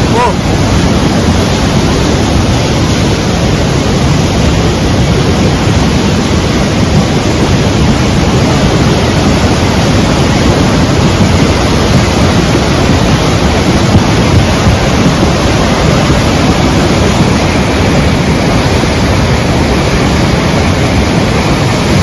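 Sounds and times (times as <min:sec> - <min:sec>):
torrential rain: 0:00.0 - 0:22.0.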